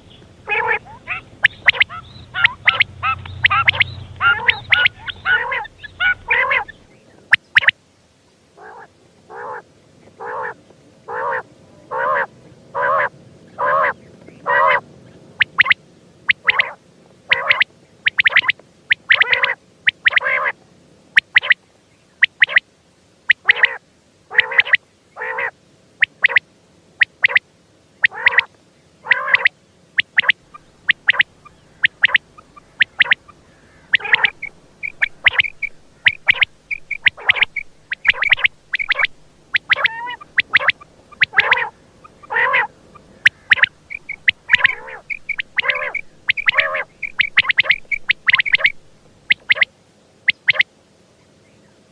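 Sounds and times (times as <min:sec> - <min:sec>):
high bird chirps: 0:00.0 - 0:07.7, 0:15.4 - 0:16.6, 0:17.3 - 0:20.2, 0:29.1 - 0:49.7, 0:50.3 - 0:50.6
quail calling: 0:00.0 - 0:07.8, 0:08.6 - 0:09.6, 0:10.2 - 0:20.6, 0:21.2 - 0:21.6, 0:22.2 - 0:22.6, 0:23.3 - 0:26.4, 0:27.0 - 0:27.4, 0:28.0 - 0:49.7, 0:50.3 - 0:50.6.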